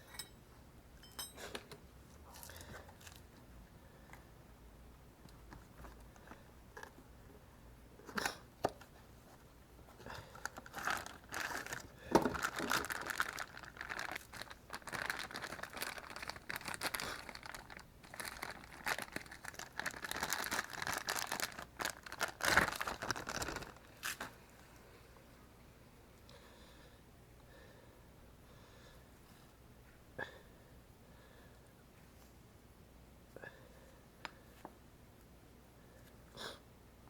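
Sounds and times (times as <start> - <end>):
packaging crinkling and rustling: 10.3 - 24.4.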